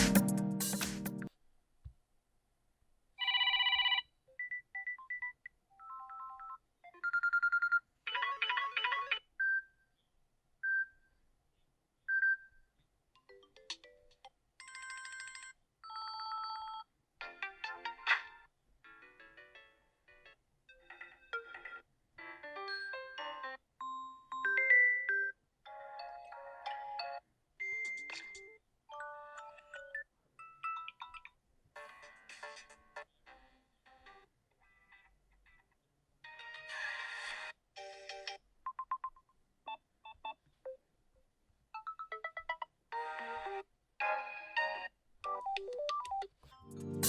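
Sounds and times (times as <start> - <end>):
electronic ringtone melodies: 0.0 - 1.3.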